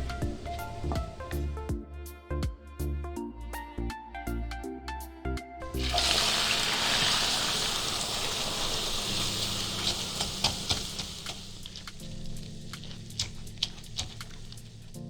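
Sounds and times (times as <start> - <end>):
food sizzling in a pan: 0.0 - 1.5, 5.7 - 15.0
music: 0.0 - 15.0.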